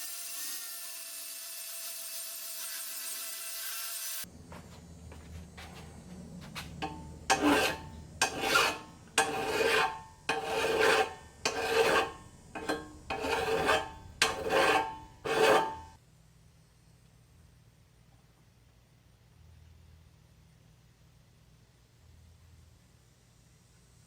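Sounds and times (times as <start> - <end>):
rasping strokes on steel: 6.8 - 16.0.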